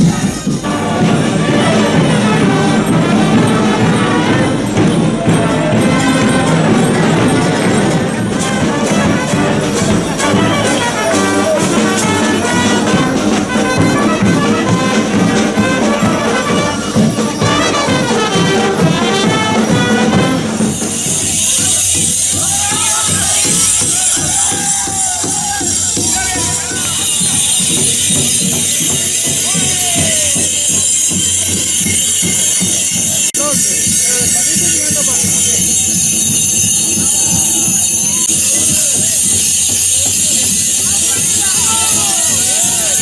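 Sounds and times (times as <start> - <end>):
orchestral music with brass: 0.0 - 25.0.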